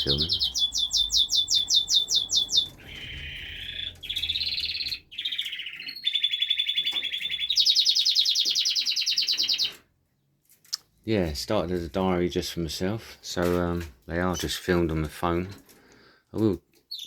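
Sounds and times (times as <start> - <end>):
canary singing trilled phrases: 0.0 - 9.8.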